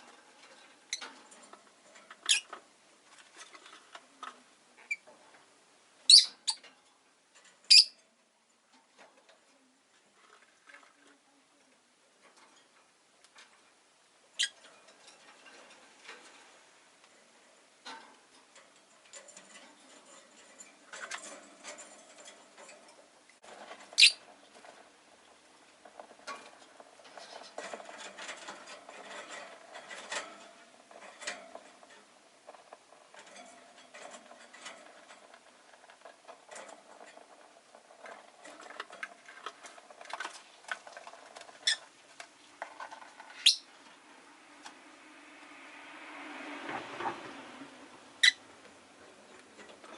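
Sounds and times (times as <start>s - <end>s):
lovebird high chirps: 6.1s - 6.6s, 7.7s - 8.0s, 24.0s - 24.2s, 43.4s - 43.7s.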